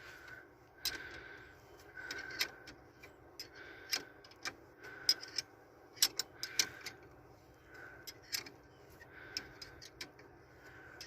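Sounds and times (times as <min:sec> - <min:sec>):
wrench clicking on metal: 0:05.1 - 0:07.0.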